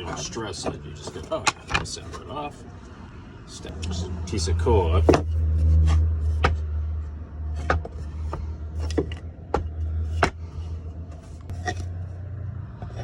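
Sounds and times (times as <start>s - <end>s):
wooden boards knocking together: 5.9s - 6.7s, 7.6s - 10.5s.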